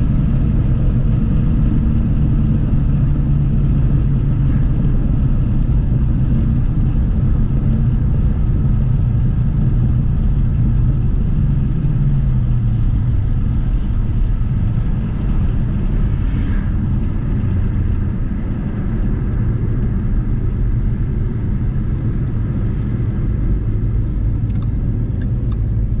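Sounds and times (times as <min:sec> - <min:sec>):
car engine running: 0:00.0 - 0:26.0.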